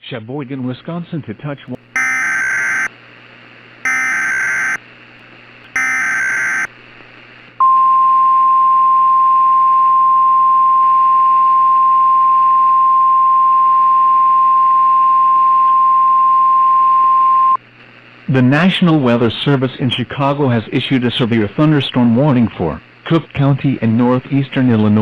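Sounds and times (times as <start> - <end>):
buzzy data bursts: 2.0 - 2.9, 3.9 - 4.8, 5.7 - 6.7
steady high alarm tone: 2.0 - 2.9, 3.9 - 4.8, 5.7 - 6.7.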